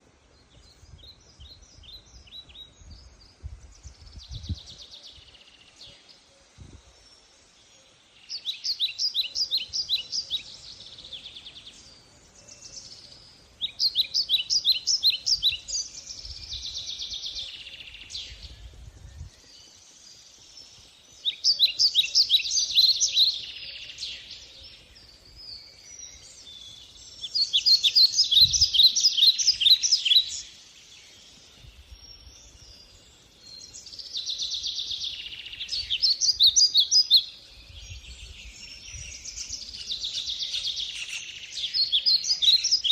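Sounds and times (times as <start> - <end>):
songbird singing: 0.0 - 42.9.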